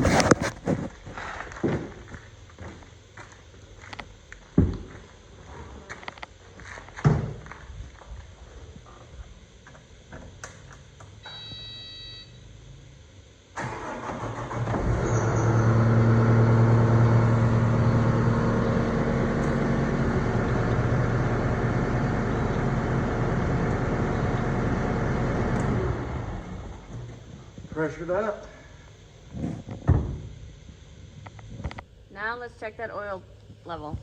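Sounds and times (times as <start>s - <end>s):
diesel engine starting and running: 13.5s - 28.2s.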